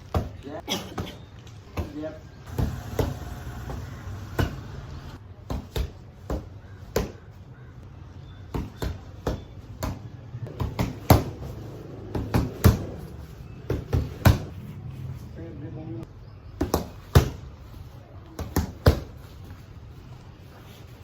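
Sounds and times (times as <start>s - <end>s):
punches and kicks smacking target: 8.5s - 11.5s.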